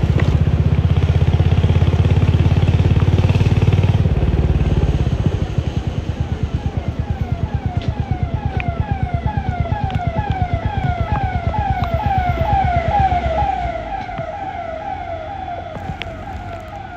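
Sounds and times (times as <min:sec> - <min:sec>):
motorcycle engine idling: 0:00.0 - 0:13.0
electronic siren-like sweeping tone: 0:02.1 - 0:16.9.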